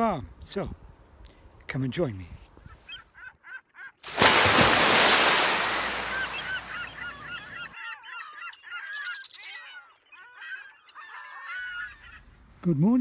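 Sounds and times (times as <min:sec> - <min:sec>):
geese honking: 0:05.2 - 0:08.2.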